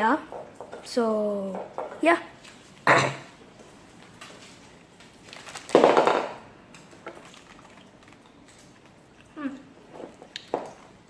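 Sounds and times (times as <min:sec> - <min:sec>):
dog crunching snack: 0:04.0 - 0:11.0.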